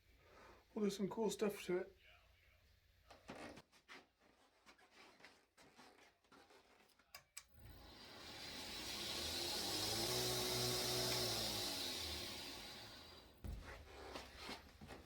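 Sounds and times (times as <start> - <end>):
power tool hissing and humming: 7.6 - 13.4.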